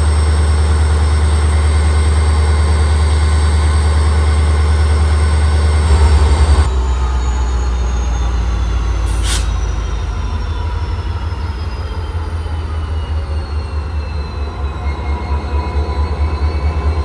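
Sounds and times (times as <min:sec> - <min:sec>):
diesel locomotive engine drone: 0:00.0 - 0:17.0
high whine falling in pitch: 0:02.6 - 0:14.9
short hiss of air: 0:09.1 - 0:09.5.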